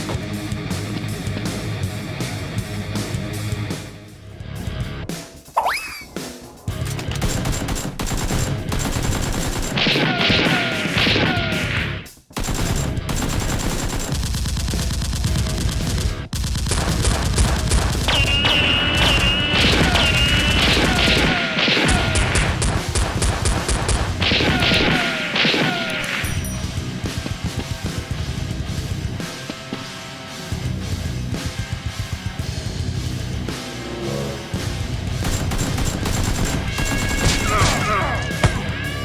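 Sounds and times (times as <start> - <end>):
rapid gunfire: 7.1 - 11.8, 12.4 - 26.3, 35.2 - 38.7
heavy guitar music: 26.0 - 39.0.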